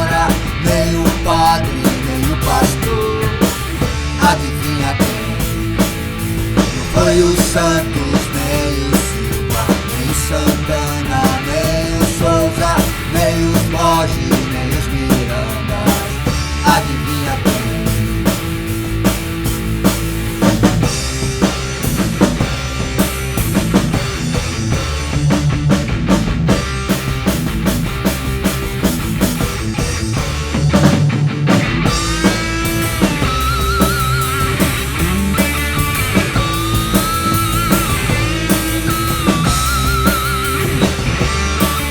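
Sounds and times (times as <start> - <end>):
drum kit: 0.0 - 41.9
electric guitars: 0.0 - 41.9
rock song: 0.0 - 41.9
wavering high guitar lead: 31.3 - 41.9.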